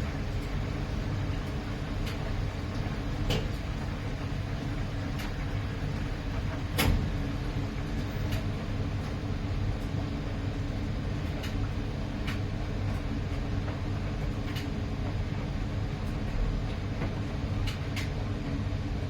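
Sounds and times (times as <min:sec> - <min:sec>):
washing machine drum rumbling: 0:00.0 - 0:18.7
knocks from washing machine: 0:03.2 - 0:03.7, 0:06.6 - 0:07.4.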